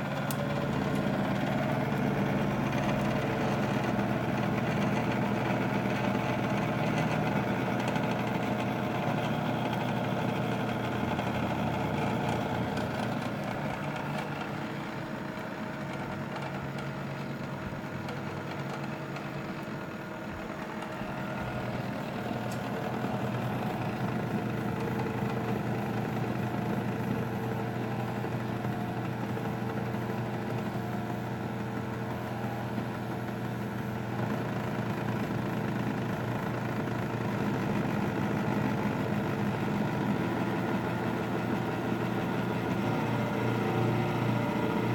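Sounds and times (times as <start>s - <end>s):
fans blowing: 0.0s - 34.6s
stepper motors humming: 0.0s - 35.3s.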